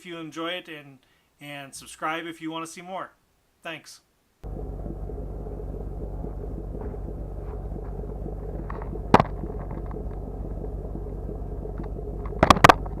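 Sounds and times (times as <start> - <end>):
car engine idling: 4.4 - 13.0
sharp knocks: 11.8 - 13.0.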